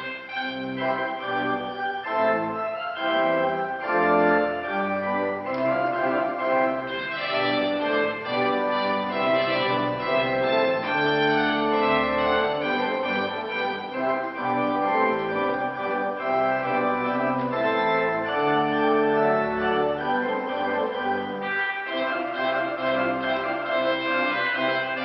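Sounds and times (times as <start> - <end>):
organ playing chords: 0.0 - 25.0.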